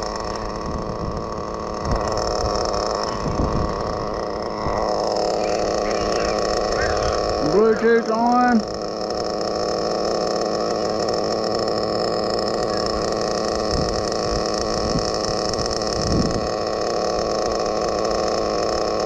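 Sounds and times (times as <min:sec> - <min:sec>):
small nitro engine idling: 0:00.0 - 0:19.0.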